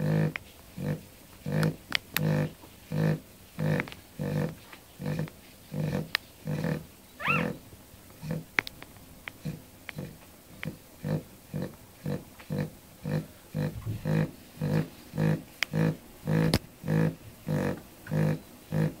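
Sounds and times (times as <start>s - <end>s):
dog snoring in snorts: 0.0s - 7.6s, 11.0s - 19.0s
high squeaks: 7.2s - 7.6s.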